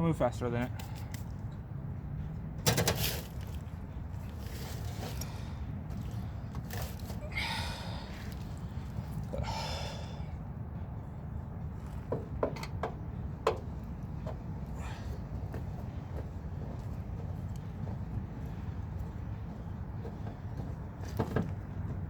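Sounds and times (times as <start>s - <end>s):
steady low hum: 0.0s - 22.0s
person exhaling: 7.2s - 8.3s, 9.3s - 10.3s
tools tapping on metal casing: 11.9s - 14.4s.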